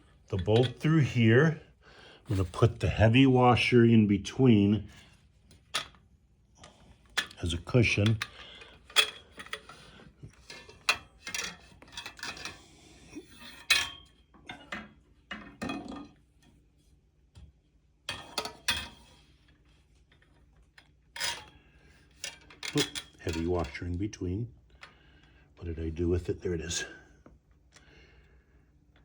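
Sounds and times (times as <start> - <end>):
metal bolt and washers clinking: 0.4 - 1.0, 7.0 - 12.6, 20.1 - 23.9.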